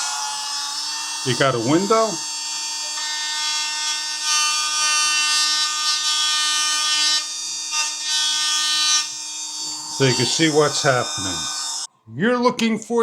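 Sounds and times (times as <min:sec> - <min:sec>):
rotary tool whining: 0:00.0 - 0:11.9.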